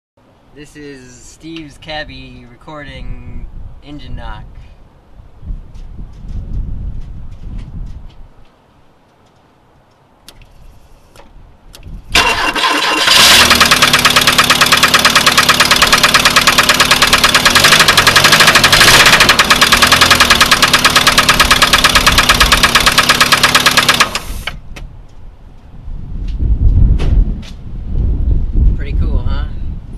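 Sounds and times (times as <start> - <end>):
car engine knocking: 13.1 - 24.5.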